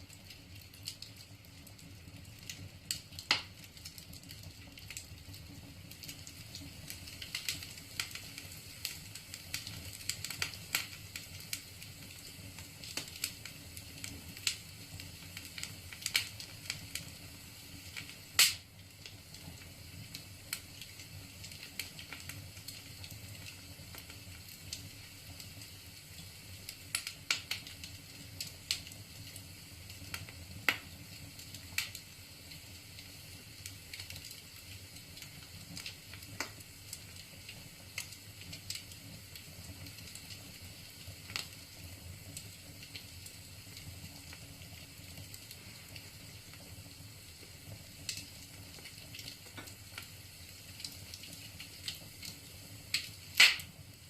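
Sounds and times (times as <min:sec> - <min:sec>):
low hiss of fire: 0:00.0 - 0:54.0
wood fire crackling: 0:00.0 - 0:54.0
loud pop from fire: 0:02.9 - 0:03.6, 0:18.0 - 0:18.7, 0:30.2 - 0:31.0, 0:52.9 - 0:53.8.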